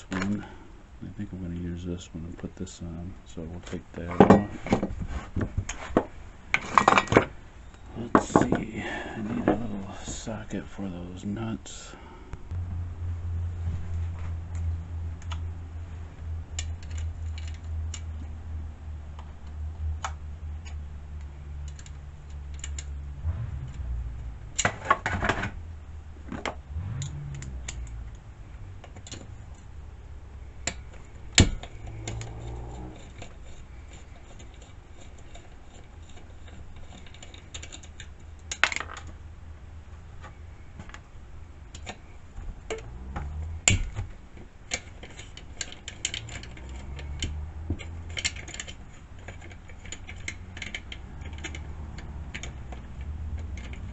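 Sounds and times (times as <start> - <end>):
low hum: 7.6 - 34.6
ratchet clicking on metal: 30.6 - 38.6.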